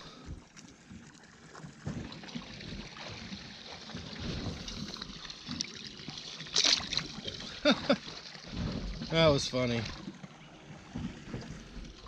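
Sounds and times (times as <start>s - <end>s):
water slapping boat hull: 0.0s - 12.0s.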